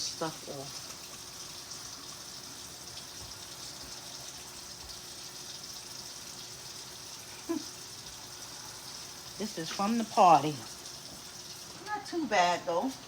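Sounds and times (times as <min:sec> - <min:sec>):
tap water running: 0:00.0 - 0:13.0.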